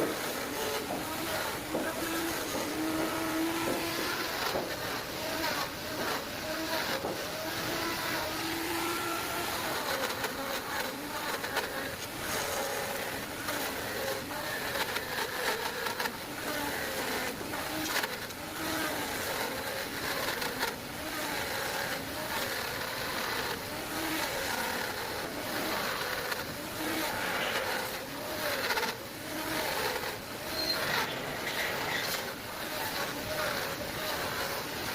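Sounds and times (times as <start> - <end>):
power tool cutting wood: 0.0 - 34.9.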